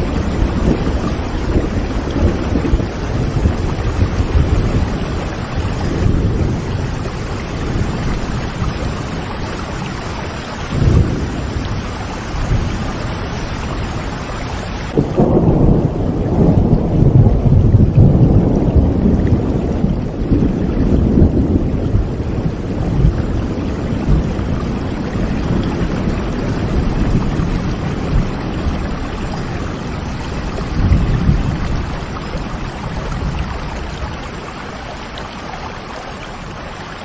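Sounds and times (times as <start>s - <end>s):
rolling thunder: 0.0s - 35.5s
steady rain: 0.0s - 37.0s.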